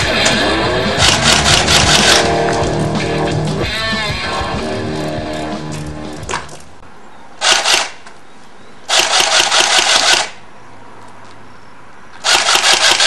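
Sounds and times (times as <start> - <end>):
airsoft gun firing bursts: 1.0 - 2.4, 7.4 - 8.0, 8.9 - 10.4, 12.2 - 13.0.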